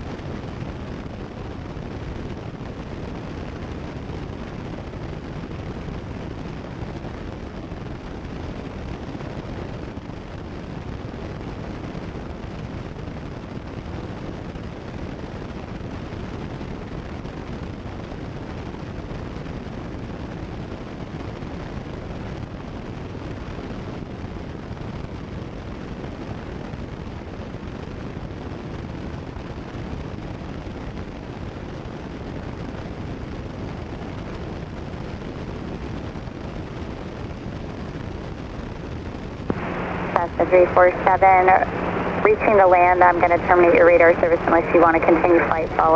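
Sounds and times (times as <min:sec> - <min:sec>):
airplane engine and propeller: 0:39.5 - 0:45.9.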